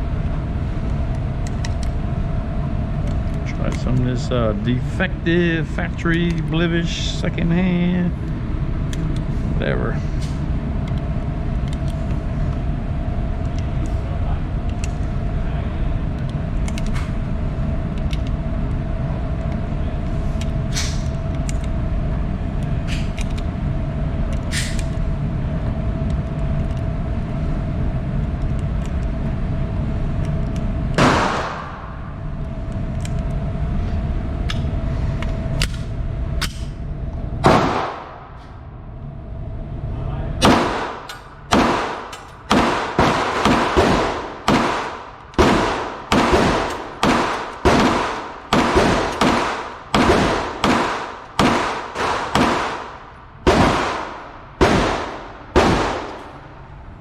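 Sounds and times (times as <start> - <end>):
low rumble with hum: 0.0 - 57.0
pistol shots: 31.0 - 32.0, 37.4 - 38.3, 40.4 - 56.3.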